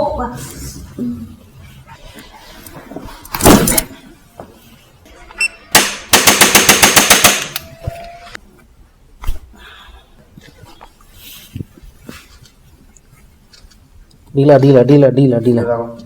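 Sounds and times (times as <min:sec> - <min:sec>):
loud thud: 0:03.4 - 0:03.9.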